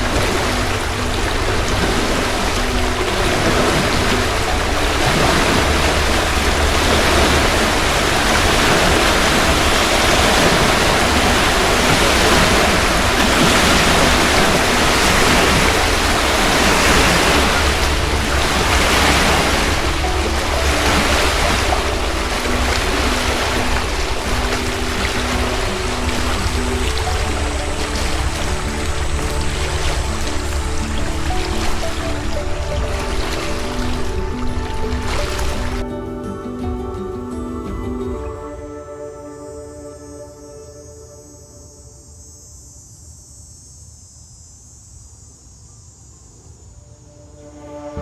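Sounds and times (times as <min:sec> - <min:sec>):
deep rumble: 0:00.0 - 0:35.8
water rushing: 0:00.0 - 0:35.9.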